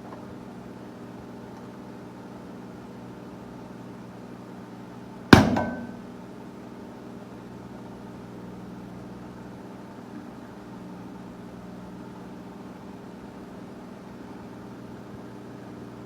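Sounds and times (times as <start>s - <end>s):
microwave oven humming: 0.0s - 16.0s
sharp bang with ringing: 5.4s - 6.1s.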